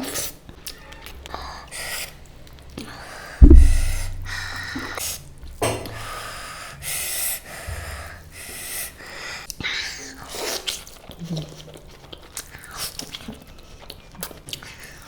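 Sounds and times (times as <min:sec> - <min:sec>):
loud low thump: 0:03.4 - 0:04.7.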